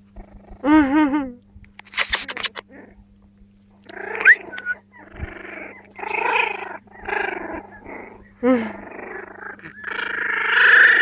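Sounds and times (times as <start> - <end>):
sharp clicks: 1.7 - 2.6
puppies giving rough vocal bursts: 1.8 - 3.0, 3.8 - 11.0
puppy high rising squeak: 4.2 - 4.8.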